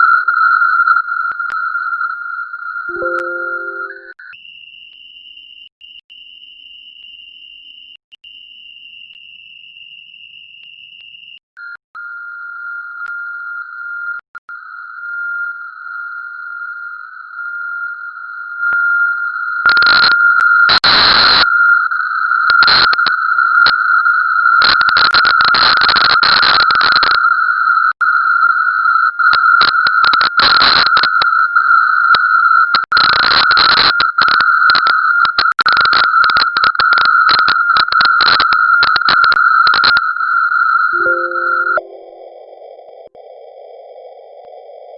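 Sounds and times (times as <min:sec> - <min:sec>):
electronic sine tone: 0:02.9 - 0:04.2, 0:41.0 - 0:42.4.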